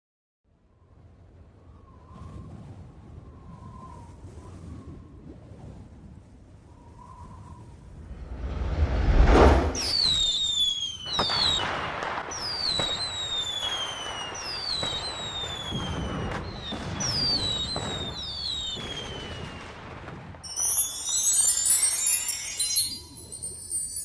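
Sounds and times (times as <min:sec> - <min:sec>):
firework burst: 0:08.2 - 0:24.0
firework whistles falling in pitch: 0:09.7 - 0:24.0.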